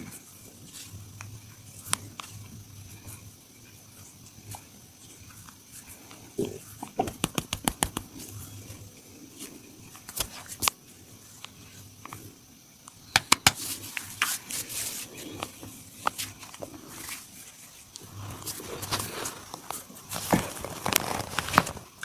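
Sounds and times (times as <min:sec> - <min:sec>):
hands tapping on body: 0:07.0 - 0:08.2, 0:13.1 - 0:13.6
hands rubbing skin: 0:07.0 - 0:08.3.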